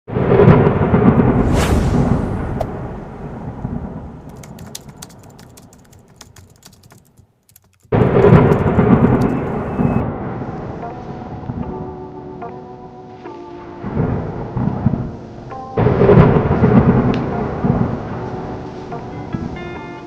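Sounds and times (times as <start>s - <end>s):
thunder rumbling: 0.1s - 6.1s, 7.9s - 12.0s, 13.8s - 19.6s
crackles: 1.1s - 10.0s.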